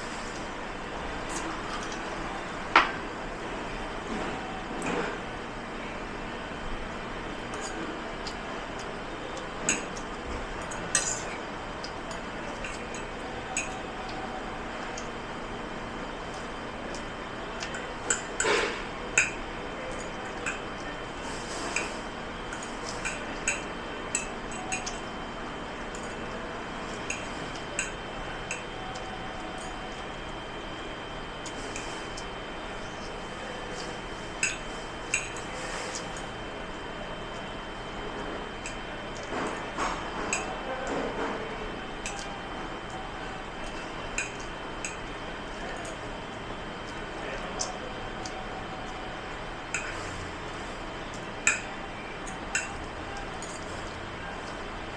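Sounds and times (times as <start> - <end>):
steady noisy background: 0.0 - 54.9
dishes and cutlery clinking: 9.6 - 11.4, 12.1 - 13.9, 16.3 - 25.0, 26.9 - 30.0, 33.7 - 36.2, 38.6 - 41.0, 43.6 - 46.0, 51.1 - 54.6.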